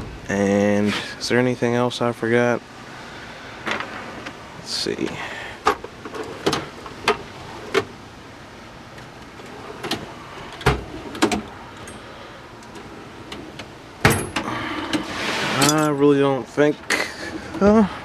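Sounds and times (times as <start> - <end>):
tools clicking and clanking: 9.0 - 16.1.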